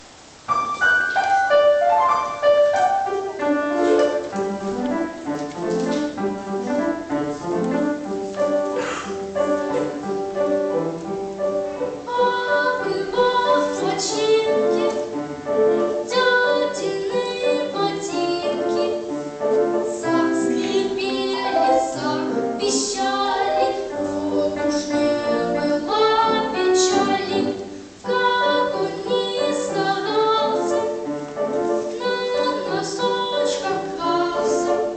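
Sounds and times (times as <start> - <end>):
piano accompaniment: 0.0 - 34.9
boy singing: 12.0 - 15.1, 16.0 - 19.1, 19.9 - 31.0, 32.0 - 34.9.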